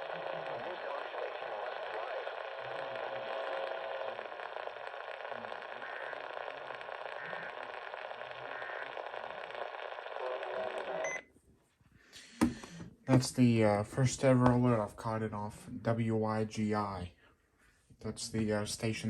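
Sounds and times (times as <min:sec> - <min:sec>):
radio static: 0:00.0 - 0:11.2.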